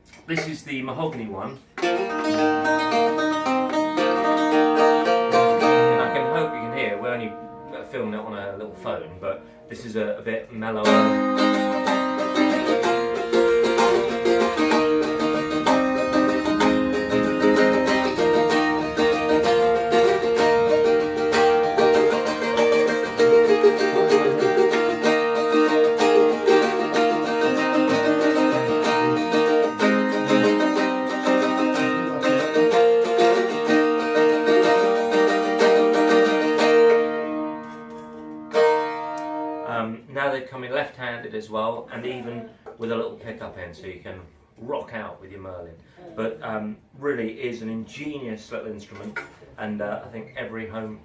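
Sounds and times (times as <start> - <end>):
stick dulcimer tune with drone: 10.9 - 39.4.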